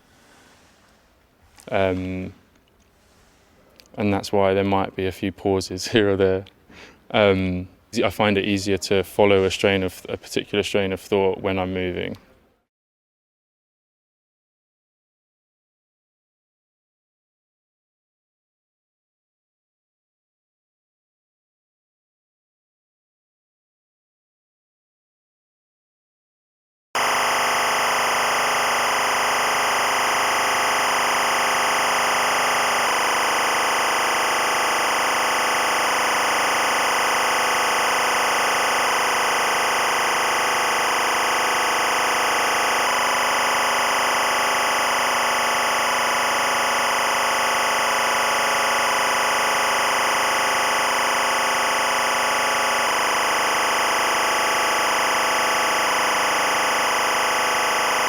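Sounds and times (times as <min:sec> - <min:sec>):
electronic drone score: 0:27.0 - 0:58.0.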